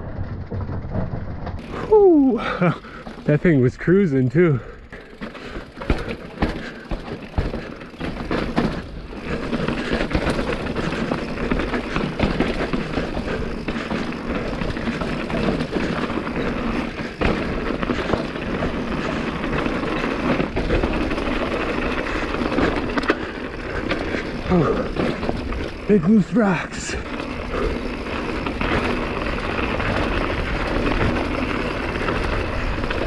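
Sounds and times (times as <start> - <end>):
bike tyres crunching on rock: 0.0 - 33.0.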